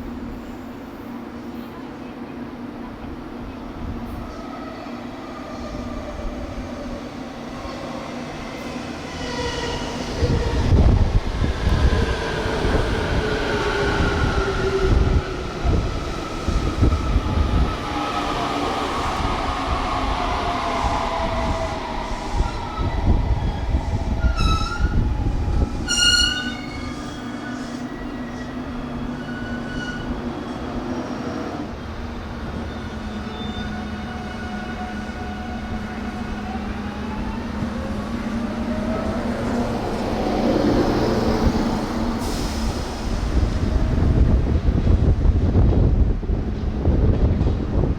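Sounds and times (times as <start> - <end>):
train rumble: 0.0 - 33.1, 33.8 - 47.9
train horn toots: 25.9 - 27.1.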